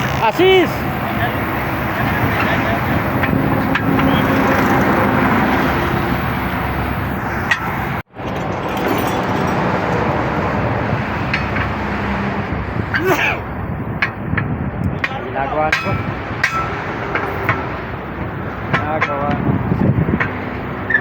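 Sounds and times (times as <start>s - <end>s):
highway traffic roar: 0.0s - 21.0s.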